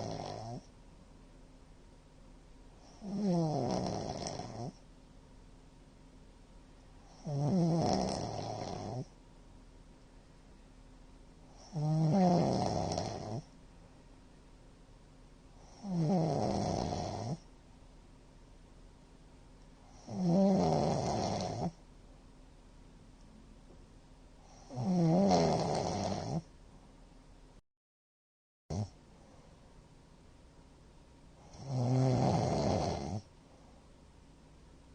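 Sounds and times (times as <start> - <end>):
man snoring heavily: 0.0 - 0.6, 2.9 - 4.8, 7.1 - 9.1, 11.6 - 13.5, 15.7 - 17.4, 20.0 - 21.8, 24.5 - 26.4, 31.5 - 33.3.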